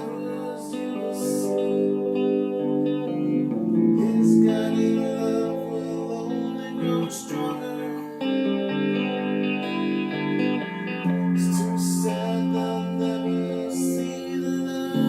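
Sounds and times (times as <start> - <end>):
band playing with guitars: 0.0 - 15.0.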